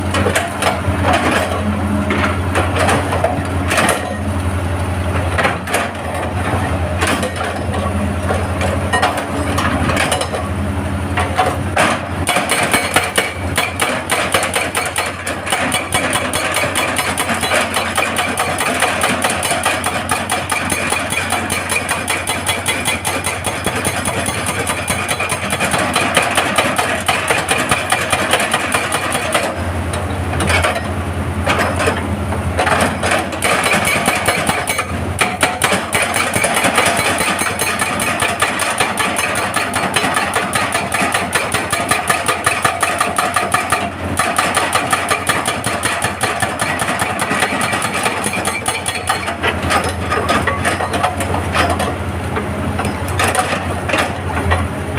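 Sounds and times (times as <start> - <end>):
excavator diesel engine running: 0.0 - 54.9
hydraulic breaker hammering rock: 0.1 - 4.3, 5.2 - 10.5, 11.1 - 54.7.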